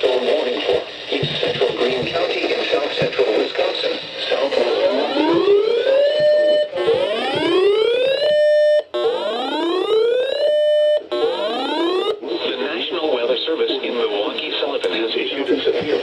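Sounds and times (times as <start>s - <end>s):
whooping electronic alarm: 4.7s - 12.2s.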